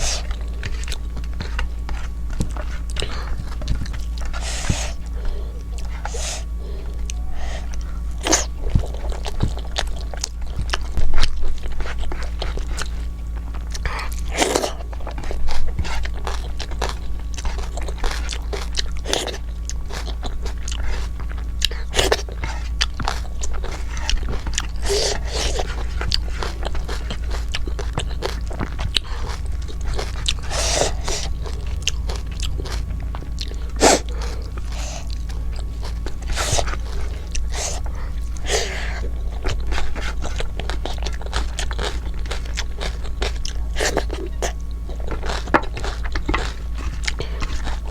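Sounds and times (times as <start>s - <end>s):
chewing and crunching: 0.0s - 47.9s
steady low hum: 0.0s - 47.9s.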